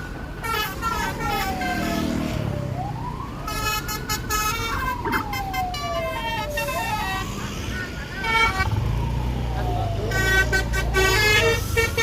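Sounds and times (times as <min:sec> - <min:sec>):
siren wailing: 0:01.2 - 0:11.9
bus multi-tone horn: 0:10.1 - 0:12.0.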